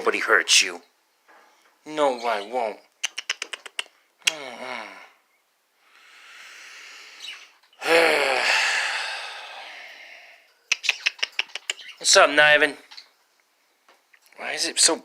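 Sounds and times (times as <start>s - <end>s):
person sighing loudly: 4.2s - 5.2s, 7.8s - 10.4s
soft breath: 5.8s - 7.5s, 8.2s - 10.6s.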